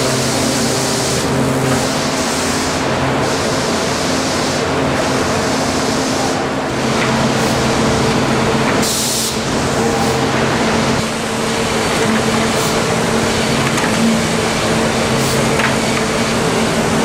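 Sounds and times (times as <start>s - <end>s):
sawmill machinery hum and clatter: 0.0s - 17.0s.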